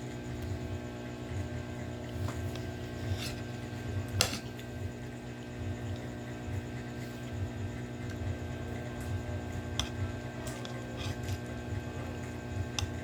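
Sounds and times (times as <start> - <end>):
steady electrical hum: 0.0 - 13.0.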